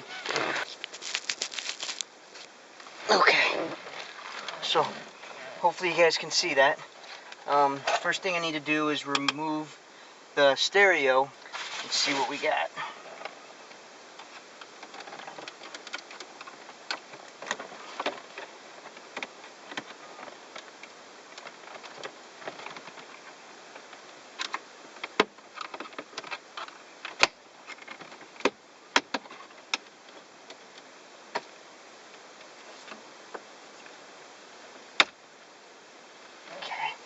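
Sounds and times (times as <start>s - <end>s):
hands scraping and rustling: 0.0s - 2.5s.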